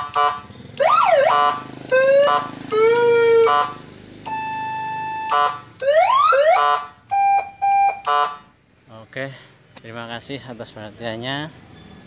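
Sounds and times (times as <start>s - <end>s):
electronic siren through loudspeaker: 0.0s - 8.4s.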